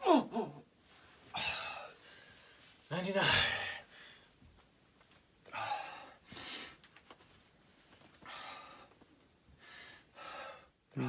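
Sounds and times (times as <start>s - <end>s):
person breathing heavily: 9.6s - 10.7s.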